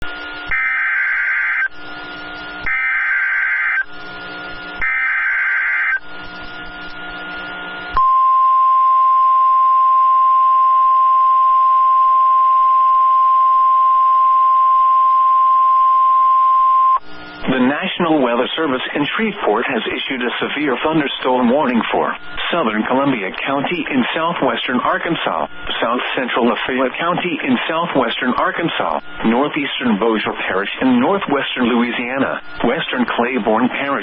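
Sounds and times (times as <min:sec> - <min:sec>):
steady alarm tone: 0:00.1 - 0:17.4
radio hiss: 0:06.0 - 0:08.0, 0:17.0 - 0:34.0.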